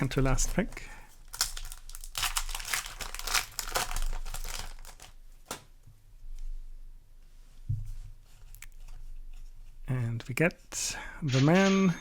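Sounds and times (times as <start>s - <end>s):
foil wrapper tearing and crinkling: 1.2s - 5.7s.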